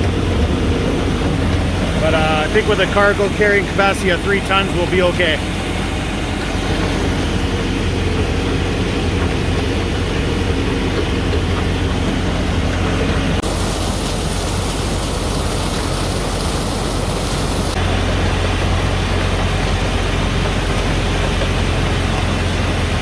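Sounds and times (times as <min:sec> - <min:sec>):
vehicle engine humming: 0:00.0 - 0:23.0
even hiss: 0:00.1 - 0:08.2, 0:12.9 - 0:17.8
harsh high hiss: 0:13.4 - 0:17.8.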